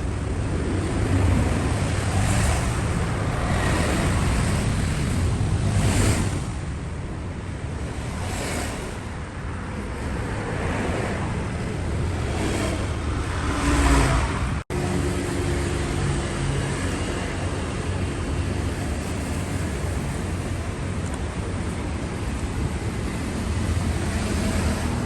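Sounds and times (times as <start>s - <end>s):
whooshing noise: 0.0s - 15.2s
car running: 0.0s - 25.0s
steady low hum: 0.0s - 25.0s.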